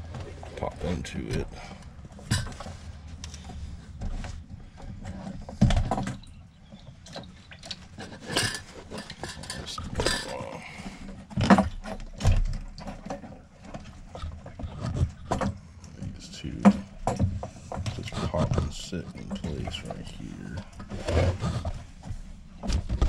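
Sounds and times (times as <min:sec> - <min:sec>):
plastic parts clicking and knocking: 0:00.1 - 0:23.0.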